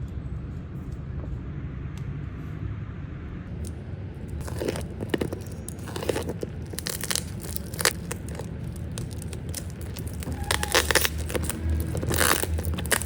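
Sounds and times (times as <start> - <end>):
small objects clicking and scraping: 3.6 - 13.0.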